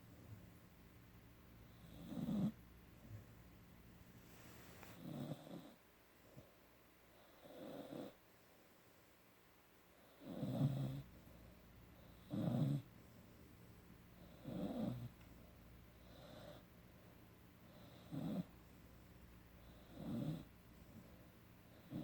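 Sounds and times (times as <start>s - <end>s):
puppy snoring: 1.6s - 2.6s, 4.8s - 6.4s, 7.1s - 8.2s, 10.0s - 11.4s, 12.0s - 13.0s, 14.2s - 15.2s, 15.9s - 16.7s, 17.6s - 18.6s, 19.6s - 21.0s, 21.7s - 22.0s.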